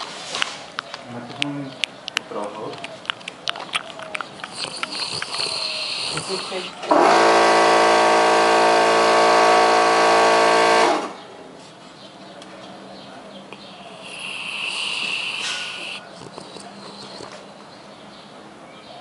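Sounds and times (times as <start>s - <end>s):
vehicle horn blast: 6.9s - 11.2s.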